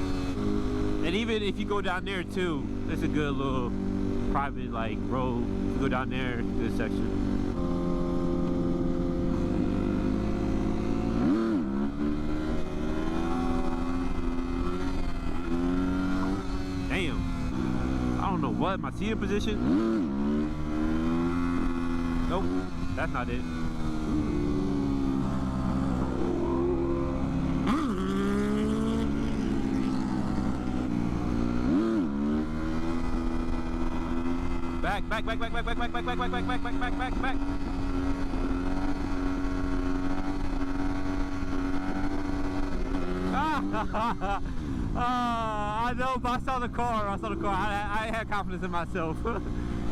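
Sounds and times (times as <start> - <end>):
motorcycle engine running: 0.0 - 49.9
motorcycle engine rev blips: 5.4 - 45.0.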